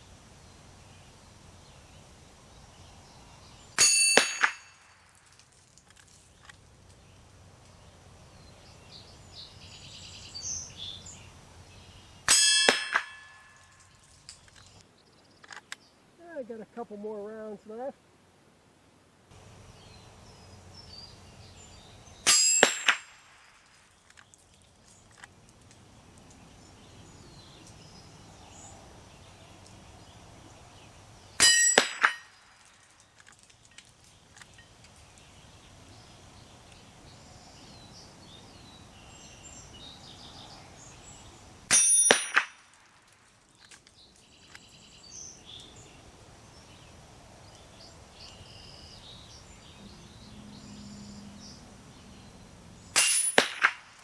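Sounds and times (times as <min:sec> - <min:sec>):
steel target clanging: 0:03.8 - 0:05.0, 0:12.3 - 0:13.8, 0:22.2 - 0:23.2, 0:31.4 - 0:32.4, 0:41.7 - 0:42.6, 0:53.0 - 0:54.0.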